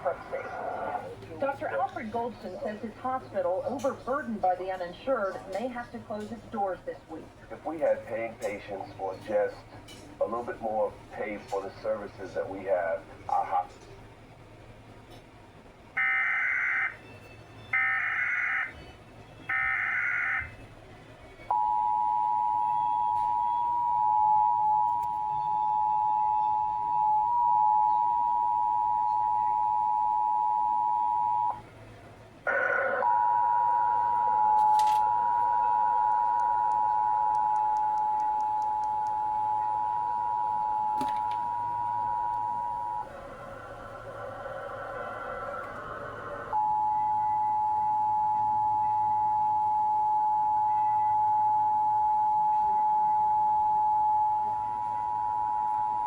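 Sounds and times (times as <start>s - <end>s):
emergency alert two-tone signal: 17.7s - 18.8s, 19.5s - 20.5s, 21.5s - 31.6s, 32.5s - 43.1s, 46.5s - 56.0s
two-tone attention signal: 32.5s - 43.1s.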